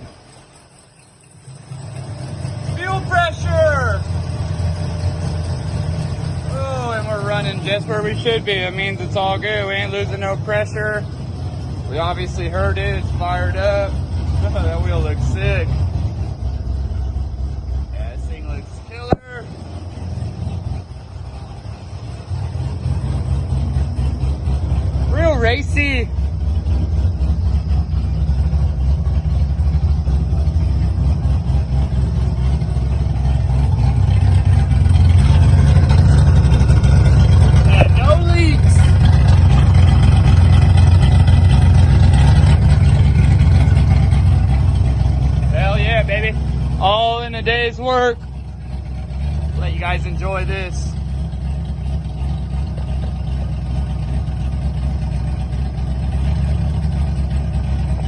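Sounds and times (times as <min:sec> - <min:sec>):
car engine idling: 0:00.0 - 0:58.0.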